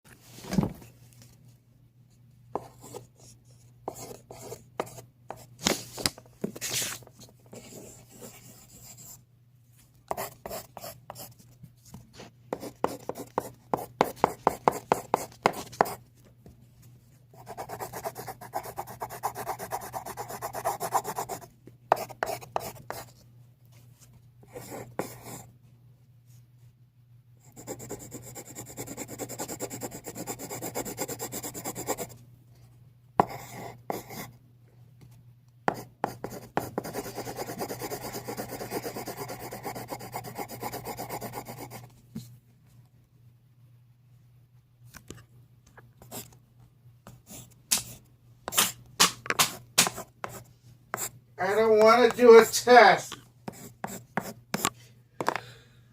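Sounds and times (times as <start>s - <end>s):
pen scratching on surface: 2.6s - 3.3s, 3.9s - 5.5s, 6.8s - 9.2s, 10.1s - 11.4s, 12.6s - 16.0s, 17.4s - 23.1s, 24.5s - 25.4s, 27.5s - 32.2s, 33.2s - 34.3s, 35.7s - 41.9s, 49.8s - 51.1s, 53.5s - 54.7s.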